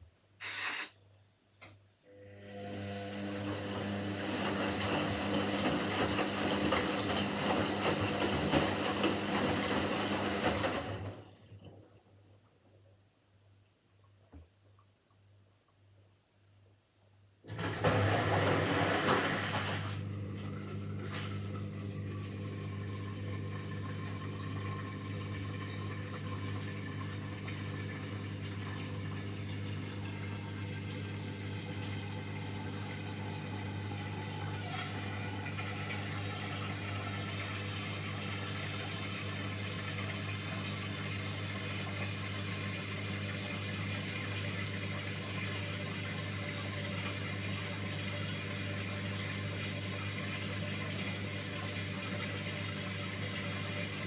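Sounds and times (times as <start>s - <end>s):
washing machine spinning: 2.1s - 11.5s, 17.5s - 54.0s
water rushing: 21.7s - 40.8s.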